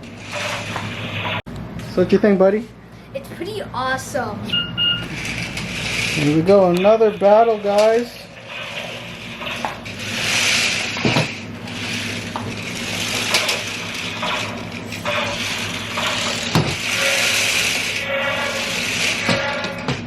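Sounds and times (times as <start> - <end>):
toy tank motors whirring: 5.0 - 19.8.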